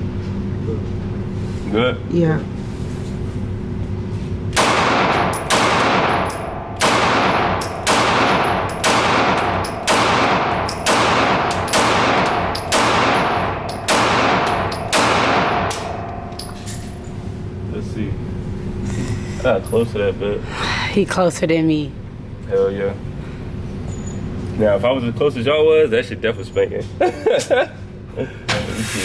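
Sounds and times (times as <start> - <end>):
gunshots with ringing tail: 4.6 - 16.1.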